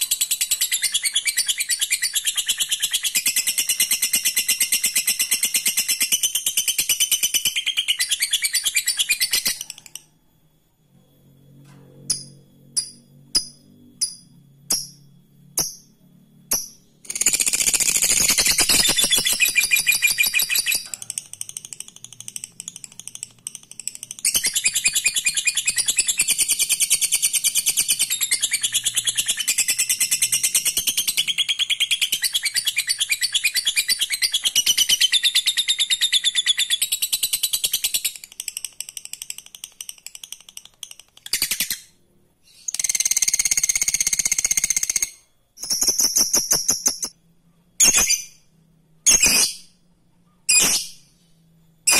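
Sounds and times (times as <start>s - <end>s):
sharp bird chirps: 0.0s - 10.5s, 12.1s - 47.2s, 47.8s - 51.9s
bird trilling chatter: 17.1s - 26.0s.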